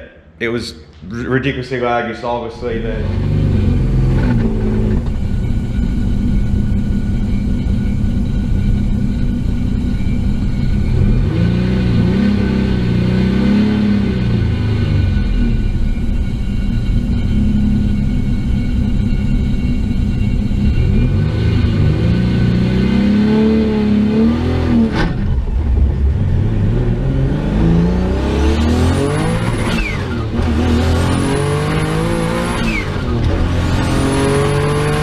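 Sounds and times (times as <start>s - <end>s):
car engine revving: 1.7s - 35.0s
high turbo whistle: 3.5s - 25.6s.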